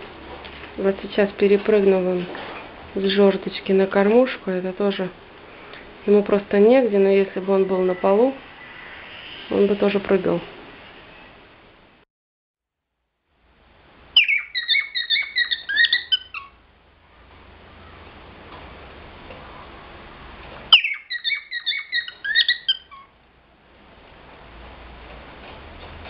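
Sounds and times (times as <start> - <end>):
cockatiel chirping: 14.2 - 16.6, 20.7 - 23.1.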